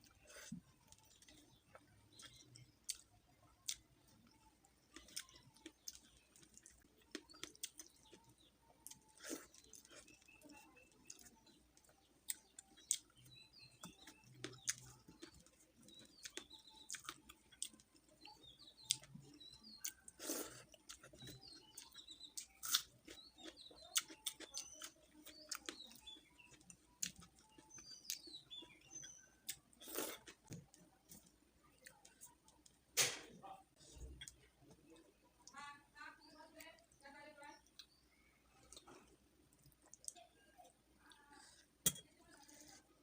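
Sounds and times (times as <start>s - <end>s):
small birds chirping: 0.0s - 43.0s
person chewing: 0.1s - 3.8s, 4.9s - 13.2s, 13.8s - 31.2s.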